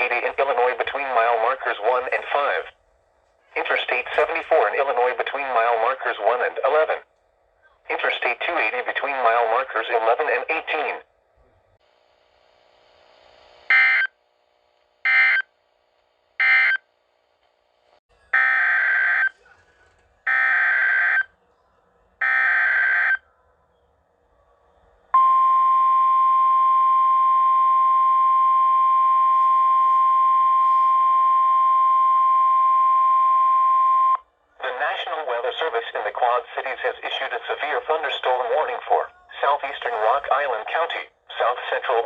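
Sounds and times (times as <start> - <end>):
steady single-pitch attention tone: 25.2 - 34.2.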